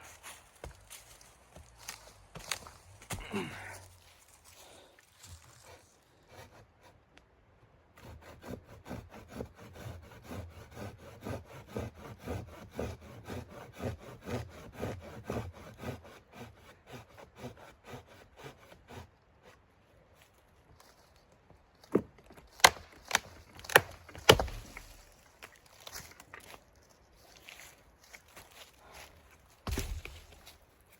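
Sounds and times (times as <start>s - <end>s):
saw cutting wood: 6.2s - 7.0s, 8.0s - 19.6s.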